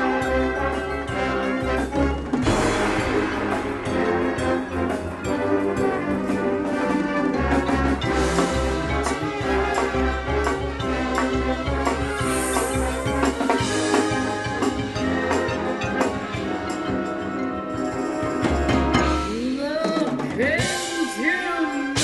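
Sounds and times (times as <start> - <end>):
marching band brass chords: 0.0 - 19.4, 20.6 - 22.0
snare and bass drum hits: 2.4 - 5.1.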